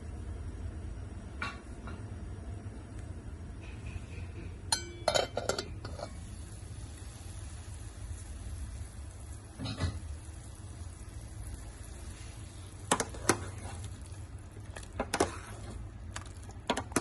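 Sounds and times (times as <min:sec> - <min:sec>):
steady low hum: 0:00.0 - 0:17.0
metal kitchenware clinking: 0:03.9 - 0:06.2.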